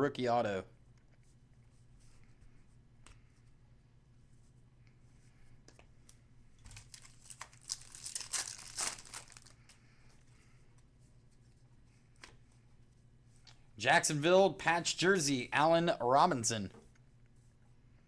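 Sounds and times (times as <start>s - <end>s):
wrapper tearing and crinkling: 6.7s - 9.7s.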